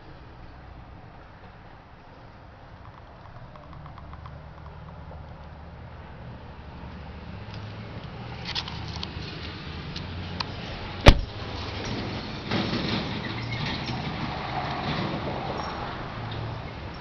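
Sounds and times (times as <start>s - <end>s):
sharp thump: 11.0s - 11.4s.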